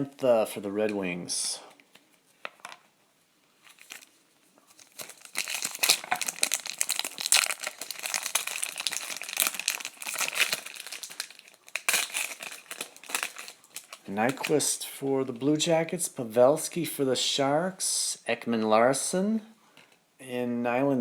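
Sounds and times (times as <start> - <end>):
card pack wrapper crinkling and tearing: 3.6 - 14.7.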